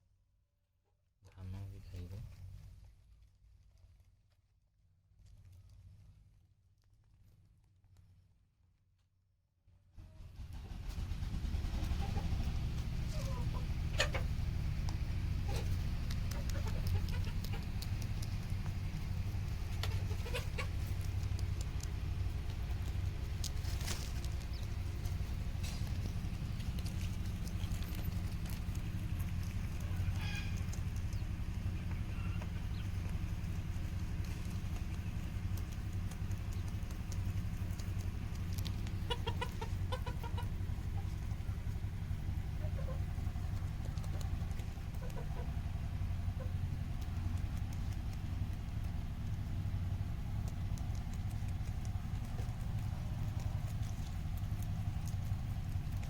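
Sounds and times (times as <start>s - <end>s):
low rumble: 10.0s - 56.0s
steady low hum: 10.2s - 56.0s
chickens clucking: 10.6s - 56.0s
light ticks: 50.4s - 52.6s.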